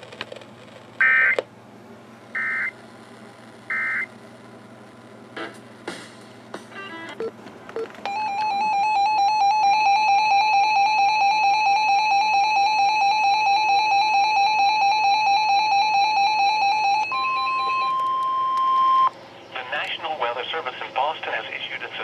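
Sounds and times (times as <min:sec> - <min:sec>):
warbling electronic alarm beeping: 0:01.0 - 0:01.4, 0:02.4 - 0:02.8, 0:03.7 - 0:04.1, 0:08.1 - 0:19.1.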